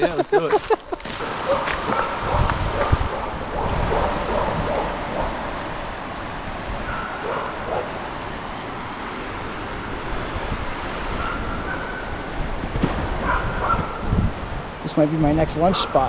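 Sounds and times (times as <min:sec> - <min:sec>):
river water rushing: 0:00.0 - 0:15.2
wind buffeting microphone: 0:00.0 - 0:16.0.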